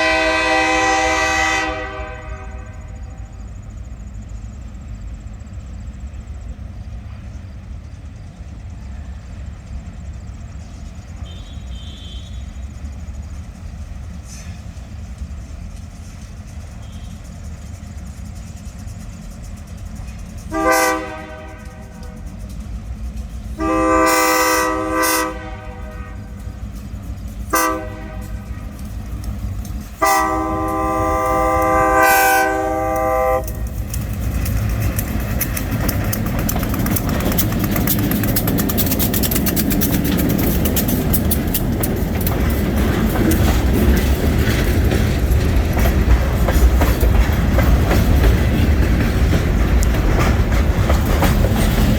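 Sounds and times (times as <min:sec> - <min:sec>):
locomotive horn blasts: 0:00.0 - 0:03.2, 0:11.2 - 0:12.6, 0:16.8 - 0:17.3, 0:20.5 - 0:22.2, 0:23.6 - 0:26.5, 0:27.5 - 0:28.6, 0:30.0 - 0:33.6
train wheels clickety-clack: 0:00.0 - 0:51.9.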